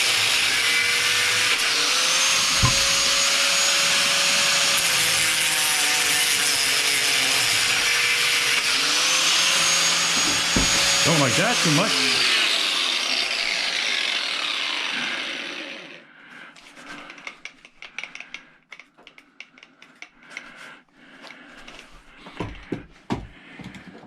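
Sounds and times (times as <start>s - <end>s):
power tool motor winding down: 0.0s - 16.0s
tools scraping and clicking: 16.6s - 22.8s.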